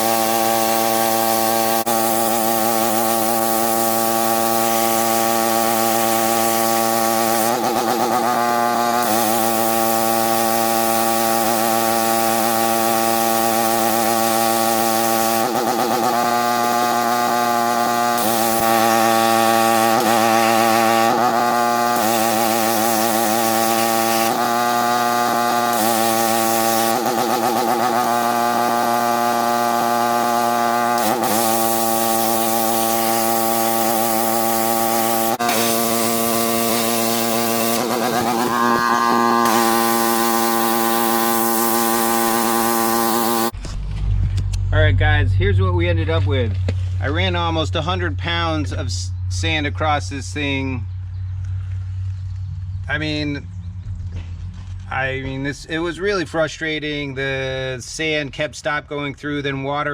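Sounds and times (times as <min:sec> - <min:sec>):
high-pressure water jet hissing: 0:00.0 - 0:43.6
pressure washer motor hum: 0:00.0 - 0:43.6.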